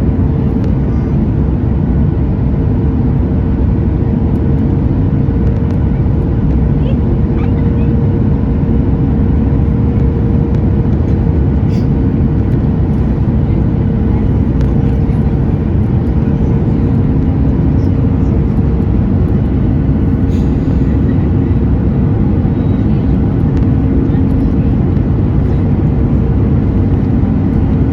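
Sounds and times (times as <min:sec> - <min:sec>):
airplane engines running: 0:00.0 - 0:27.9
steady cabin hum: 0:00.0 - 0:27.9.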